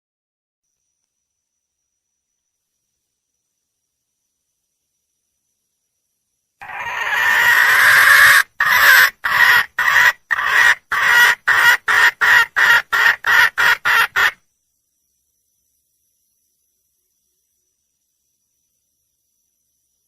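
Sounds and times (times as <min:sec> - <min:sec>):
hen calling: 0:06.6 - 0:14.4.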